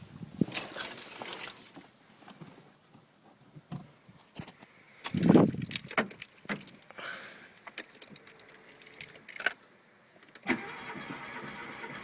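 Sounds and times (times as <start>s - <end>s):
keys jangling: 0.5s - 1.8s, 5.2s - 7.0s, 7.6s - 9.6s
car engine starting and running: 10.4s - 12.0s.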